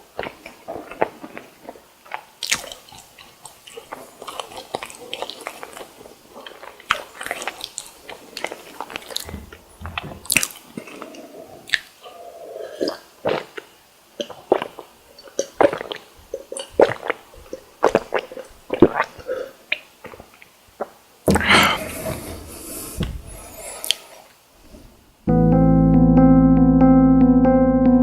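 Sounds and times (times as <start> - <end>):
wet squishy mouth sounds: 12.8 - 21.6.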